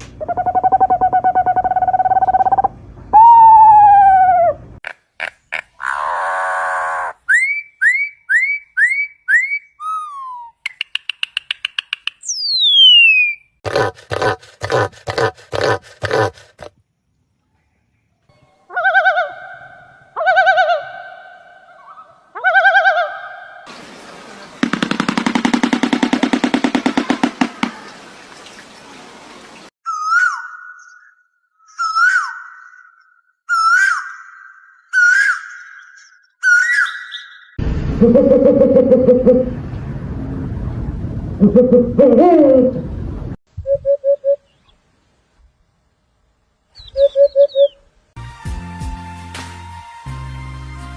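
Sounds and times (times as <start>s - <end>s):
bird calls with clicks and whistles: 7.3s - 13.5s, 23.7s - 37.6s.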